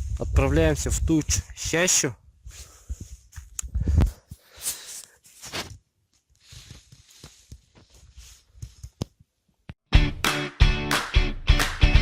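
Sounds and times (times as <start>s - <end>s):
skis scraping through snow: 6.4s - 8.5s.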